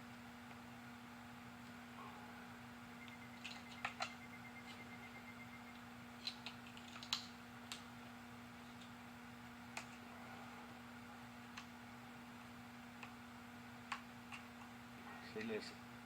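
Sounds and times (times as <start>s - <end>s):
low steady hum: 0.0s - 16.0s
small metal parts clicking: 6.2s - 7.2s.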